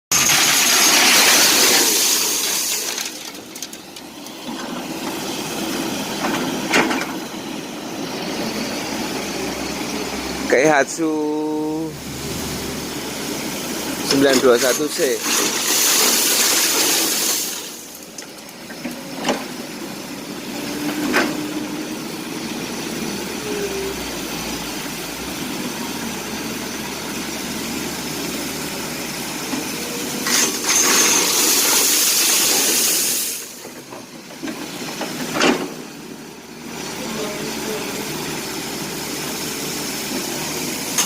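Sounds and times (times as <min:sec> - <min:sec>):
excavator engine running: 0:00.1 - 0:41.0
rock pouring from bucket: 0:00.2 - 0:03.6, 0:14.7 - 0:18.0.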